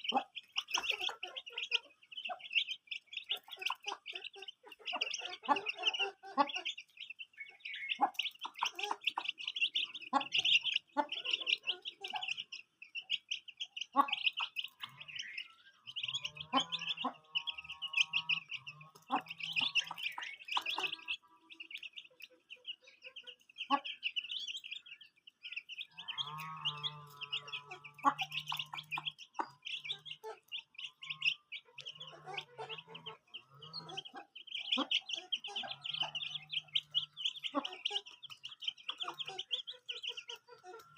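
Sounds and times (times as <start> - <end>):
long drawn-out bird calls: 0.0 - 40.9
poultry chirping rapidly: 0.0 - 40.9
poultry clucking: 0.0 - 40.9.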